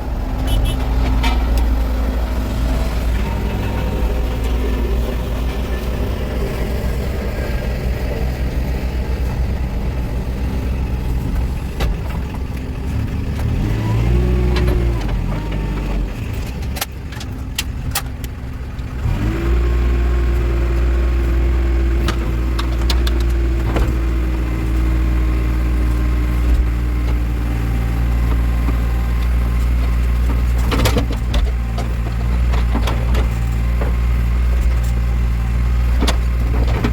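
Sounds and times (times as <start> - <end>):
diesel engine running: 0.0 - 36.9
knocks and clanks: 0.3 - 5.9.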